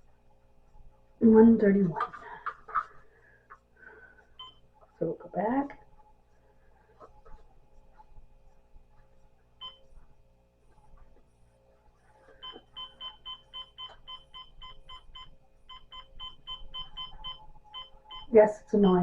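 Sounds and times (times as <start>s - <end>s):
digital clock beeping: 12.4s - 19.0s.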